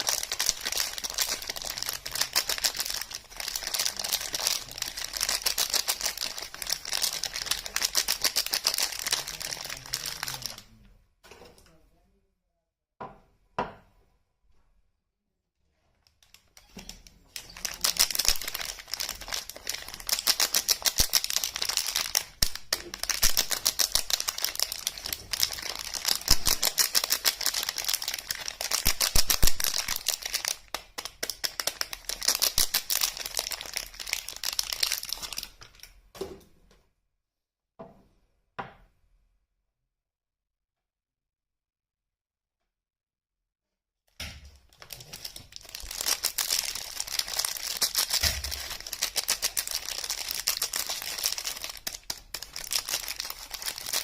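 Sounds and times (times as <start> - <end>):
wrapper crinkling and tearing: 0.0 - 10.7, 16.2 - 36.0, 44.6 - 54.0.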